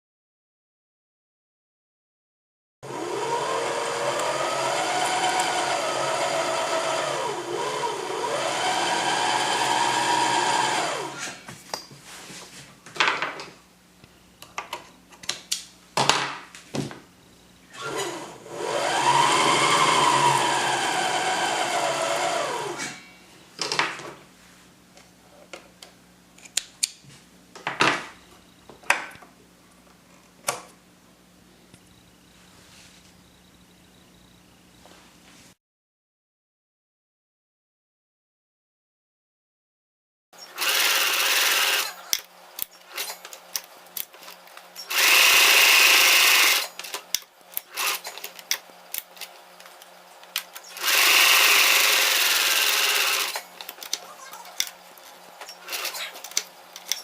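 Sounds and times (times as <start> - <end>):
sewing machine motor running: 2.8 - 11.4, 17.7 - 22.8, 40.5 - 43.6, 44.7 - 57.0.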